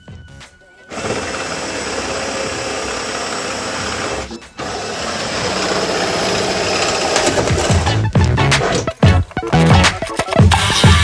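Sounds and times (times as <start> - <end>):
power drill running: 0.9 - 8.0.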